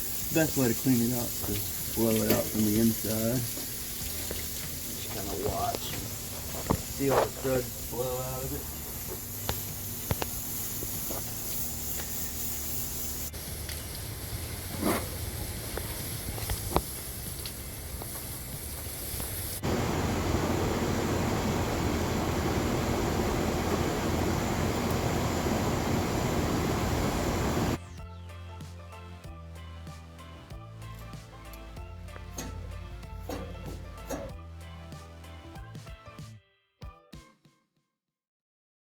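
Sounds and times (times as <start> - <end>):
hose water spraying: 0.0 - 27.8.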